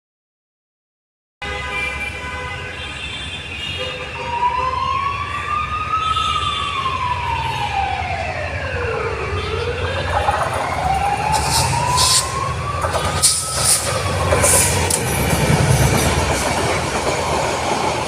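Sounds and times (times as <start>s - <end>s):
siren wailing: 4.2s - 18.0s.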